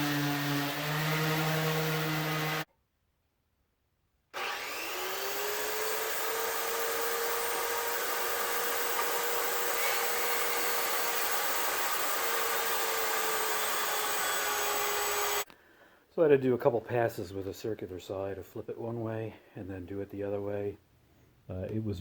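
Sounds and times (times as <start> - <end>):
electric power tool motor whine: 4.4 - 15.4.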